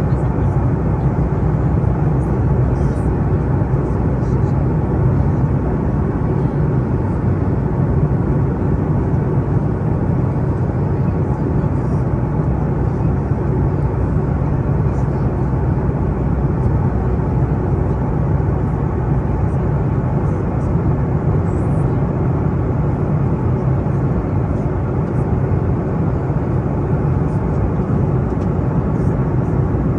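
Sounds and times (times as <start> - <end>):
airplane engine drone: 0.0 - 29.9.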